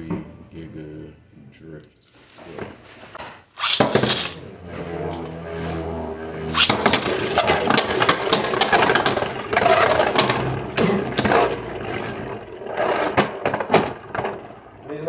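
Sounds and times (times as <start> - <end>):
spinning top launch snap: 3.6 - 4.4
spinning tops clashing clicks: 3.6 - 4.4.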